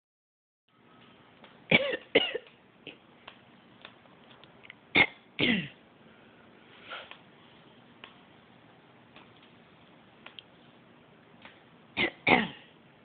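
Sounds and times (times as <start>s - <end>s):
faint clicks: 3.2s - 4.8s, 10.2s - 10.5s.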